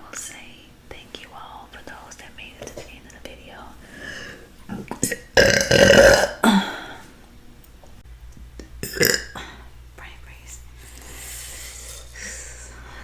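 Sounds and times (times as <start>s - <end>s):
woman burping loudly: 4.7s - 7.0s, 8.8s - 9.6s.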